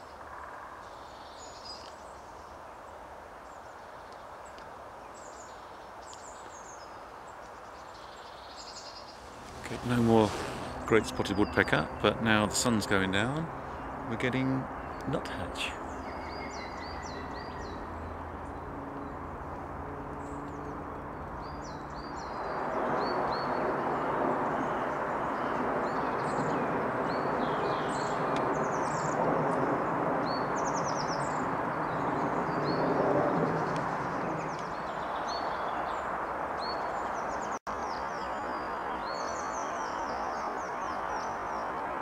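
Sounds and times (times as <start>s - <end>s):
steady rushing background noise: 8.6s - 13.6s.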